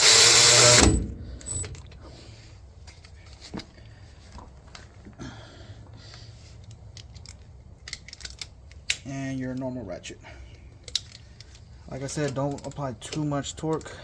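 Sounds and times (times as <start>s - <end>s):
cordless power tool: 0.0s - 1.6s.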